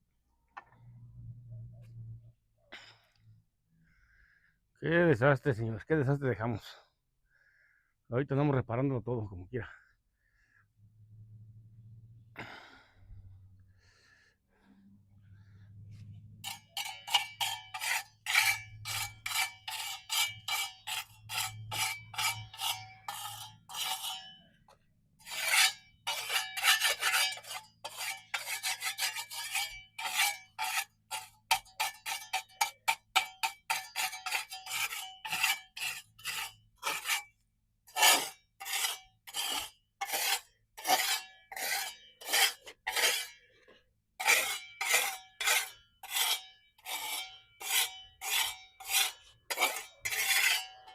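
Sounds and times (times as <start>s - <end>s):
metal tool scraping concrete: 15.8s - 50.9s.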